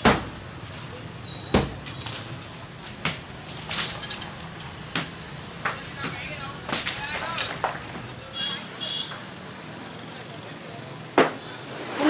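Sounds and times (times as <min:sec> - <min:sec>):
low background noise: 0:00.0 - 0:11.6
knocks and bangs: 0:01.5 - 0:08.3.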